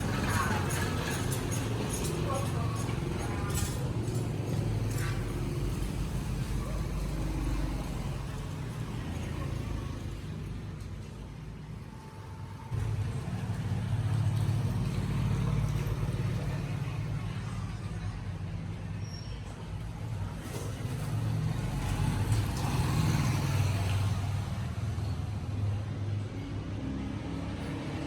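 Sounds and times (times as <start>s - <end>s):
vehicle engine rumbling: 0.0s - 28.0s.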